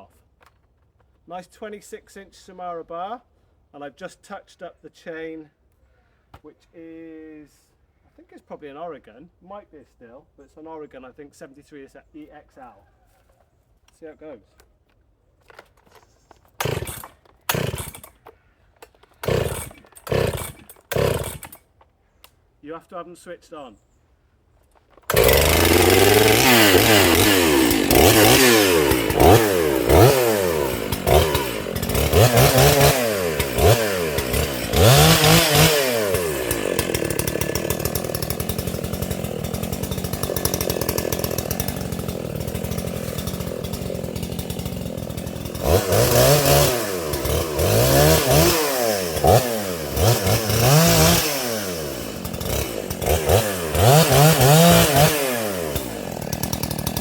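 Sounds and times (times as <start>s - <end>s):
chainsaw revving and cutting: 16.6s - 18.2s, 19.2s - 21.6s, 25.1s - 57.0s.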